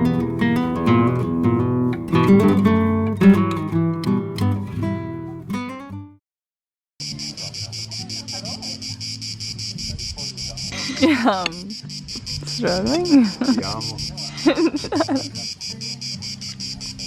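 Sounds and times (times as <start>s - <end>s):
guitar music: 0.0s - 6.2s, 7.0s - 17.0s
crickets chirping: 7.0s - 17.0s.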